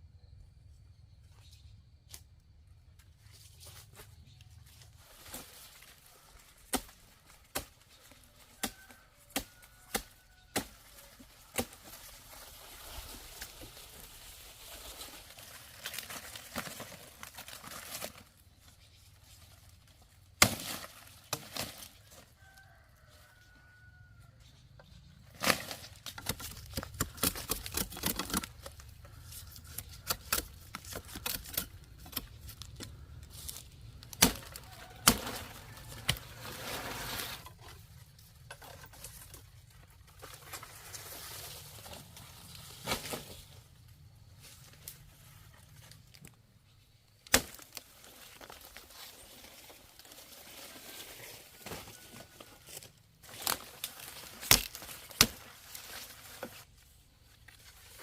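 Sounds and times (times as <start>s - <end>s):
faint chicken clucks: 7.8s - 11.6s, 22.0s - 25.2s.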